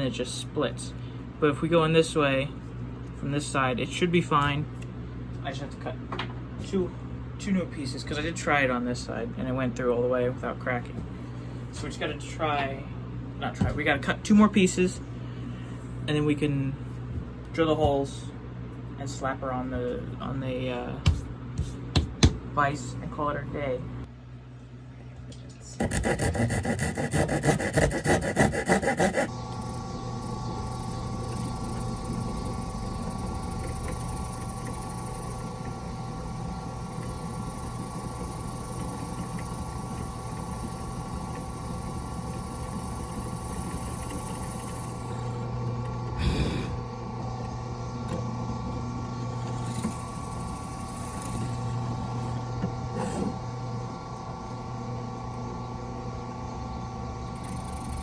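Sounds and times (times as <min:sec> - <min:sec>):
power tool cutting wood: 0:25.8 - 0:53.5.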